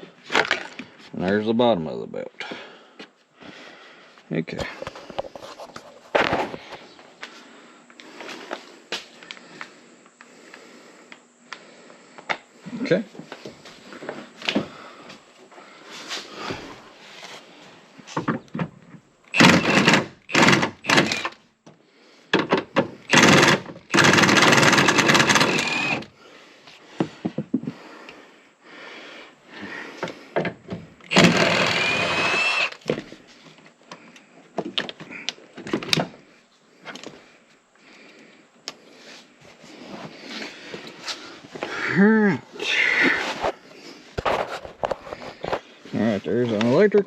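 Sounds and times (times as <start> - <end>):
loud bursts of mechanical noise: 19.3 - 21.4, 22.5 - 26.1, 31.1 - 32.8.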